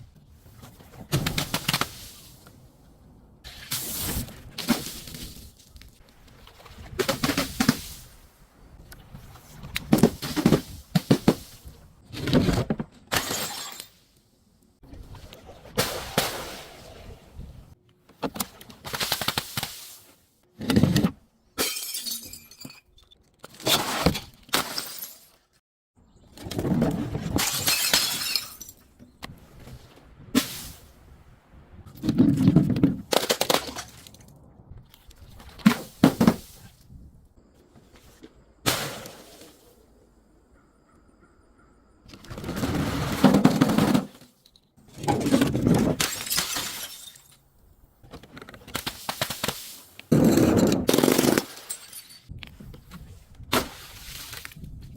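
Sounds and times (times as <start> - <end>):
glass bottles shattering: 13.1 - 14.0, 21.6 - 23.1, 24.6 - 25.4, 27.4 - 28.8, 46.0 - 47.4, 50.2 - 52.3
glass crunching: 46.0 - 47.4, 50.9 - 52.3.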